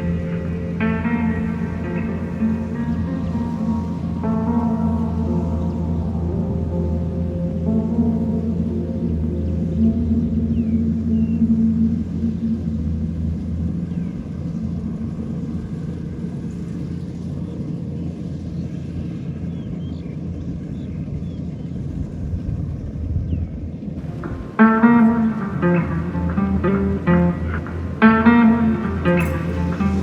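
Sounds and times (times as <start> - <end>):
plucked-string music: 0.0 - 17.0, 24.0 - 30.0
steady low rumble: 0.0 - 30.0.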